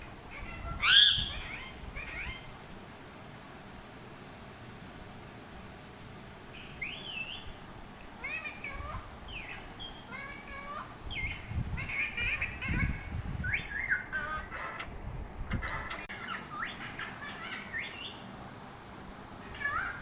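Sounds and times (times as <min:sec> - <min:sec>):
parrot chirping and whistling: 0:00.4 - 0:02.5, 0:06.5 - 0:07.6, 0:08.2 - 0:14.8, 0:16.2 - 0:18.2.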